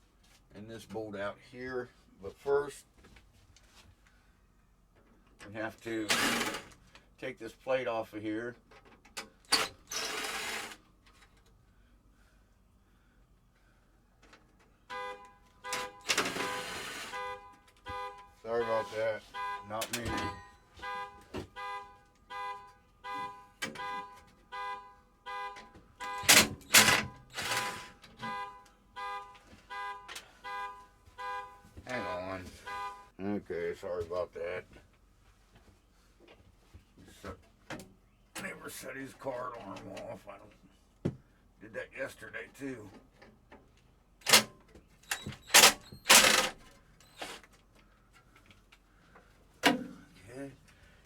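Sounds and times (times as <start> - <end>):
car horn honking in short blasts: 14.9 - 33.2.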